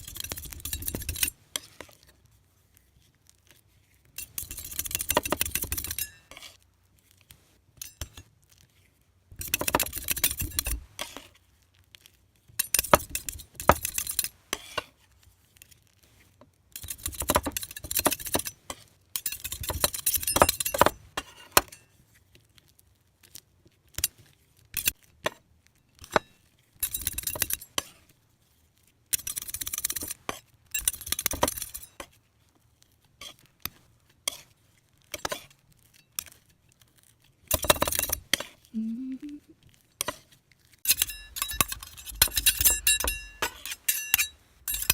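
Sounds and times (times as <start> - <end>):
small hard objects clinking: 40.8 - 44.9.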